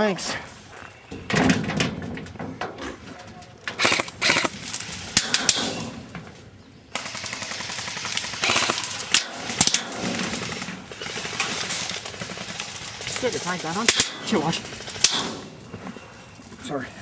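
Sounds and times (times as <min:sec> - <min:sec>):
airsoft rifles firing bursts: 0:03.8 - 0:04.6, 0:07.2 - 0:09.2.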